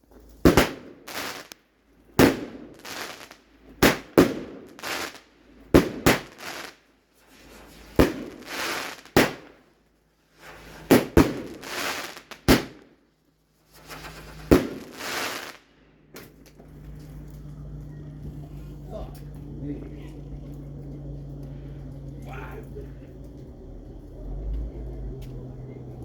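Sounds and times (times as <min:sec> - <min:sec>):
fireworks bangs with crackling: 0:00.1 - 0:09.7, 0:10.3 - 0:13.0, 0:13.6 - 0:17.9.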